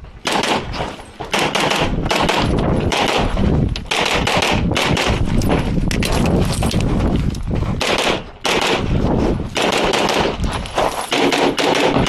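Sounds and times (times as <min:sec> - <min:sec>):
pistol shots: 0:00.2 - 0:05.2, 0:07.8 - 0:09.0, 0:09.6 - 0:10.4, 0:11.1 - 0:12.0.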